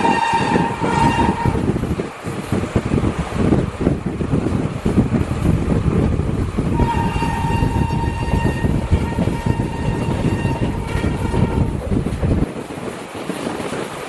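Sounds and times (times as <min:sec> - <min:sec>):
train horn long note: 0:00.0 - 0:01.7, 0:06.7 - 0:11.9
train rumbling past: 0:00.0 - 0:14.0.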